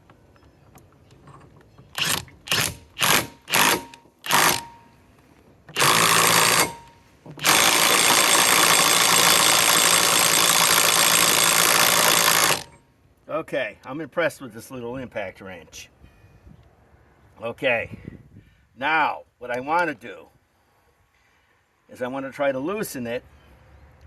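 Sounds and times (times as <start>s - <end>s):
cordless impact wrench: 2.0s - 5.0s, 5.7s - 12.8s.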